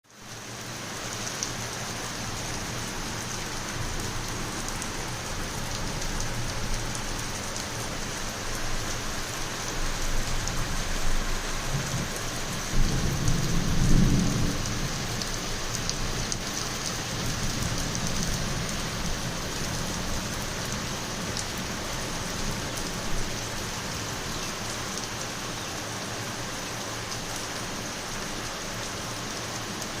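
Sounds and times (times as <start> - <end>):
heavy rain pouring: 0.0 - 30.0
thunder rumble: 11.7 - 15.2.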